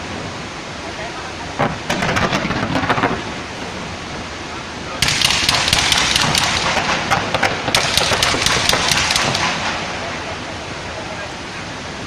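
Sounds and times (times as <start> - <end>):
rumble of fireworks display: 0.8 - 11.3
fireworks crackling: 1.6 - 10.4.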